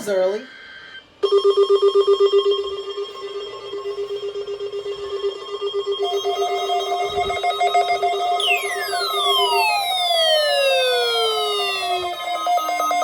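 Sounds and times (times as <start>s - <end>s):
pulsing electronic beep tone: 0.5s - 13.0s
higher pulsing tone: 5.3s - 13.0s
falling siren-like sweeps: 6.0s - 13.0s.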